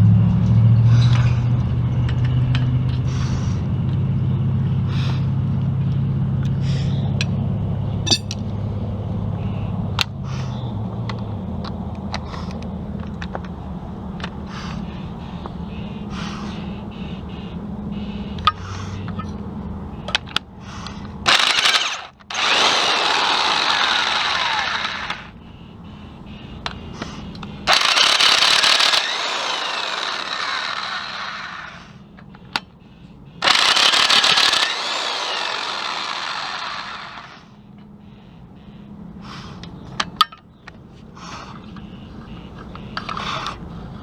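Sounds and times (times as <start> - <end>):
power tool running: 21.3 - 25.3, 27.7 - 32.0, 33.4 - 37.5.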